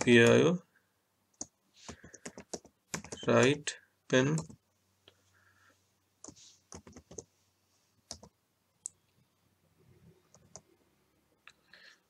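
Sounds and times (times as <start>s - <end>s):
computer keys clicking: 1.3s - 3.3s, 4.1s - 4.6s, 6.2s - 7.3s, 8.1s - 9.0s, 10.3s - 10.6s.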